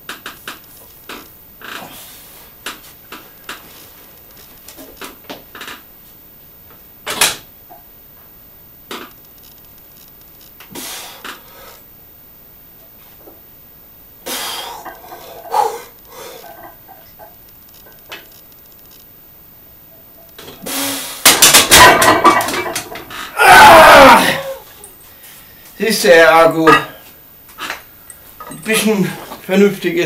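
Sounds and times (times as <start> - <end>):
barbell knocks and clanks: 21.3 - 23.1.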